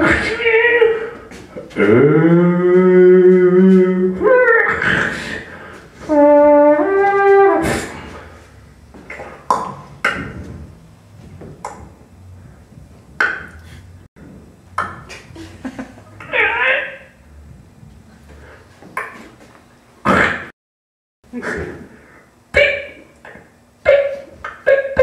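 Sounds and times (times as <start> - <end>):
trumpet-like horn call: 6.0 - 8.1.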